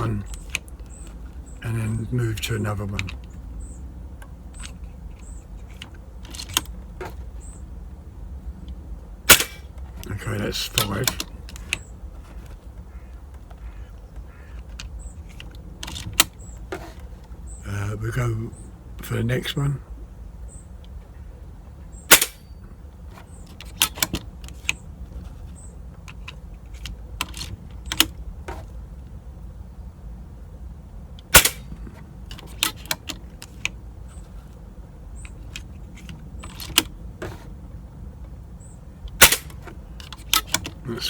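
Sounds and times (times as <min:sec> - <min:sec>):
rifle handling clicks and knocks: 0:00.0 - 0:01.5, 0:02.4 - 0:03.4, 0:04.2 - 0:07.6, 0:08.6 - 0:17.4, 0:22.1 - 0:28.7, 0:31.2 - 0:34.6, 0:35.2 - 0:37.6, 0:39.1 - 0:40.9
air rifle shots: 0:09.3 - 0:09.8, 0:22.1 - 0:22.5, 0:31.3 - 0:31.8, 0:39.2 - 0:39.6.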